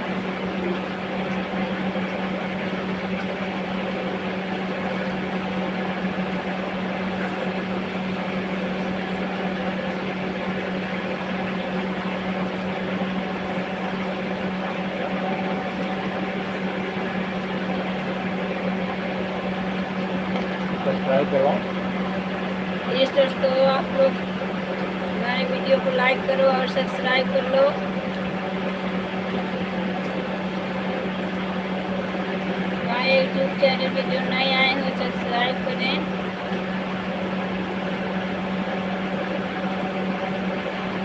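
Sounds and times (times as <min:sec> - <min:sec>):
motor humming and whirring: 0:00.0 - 0:41.0.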